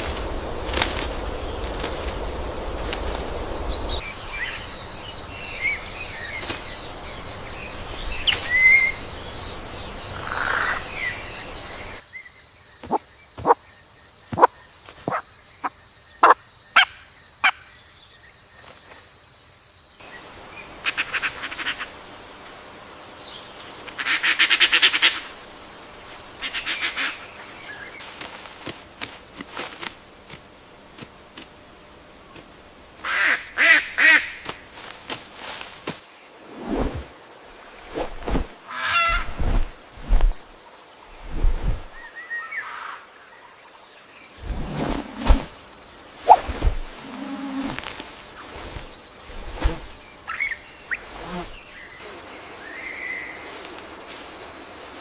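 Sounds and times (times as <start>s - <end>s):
forest background: 0.0s - 55.0s
harsh raspy bird calls: 16.2s - 17.6s, 38.7s - 39.3s.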